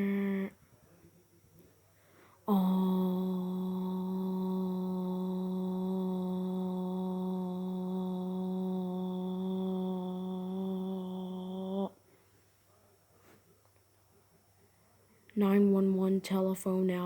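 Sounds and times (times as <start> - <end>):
low buzzing electronic tone: 0.0 - 0.6, 2.5 - 12.0.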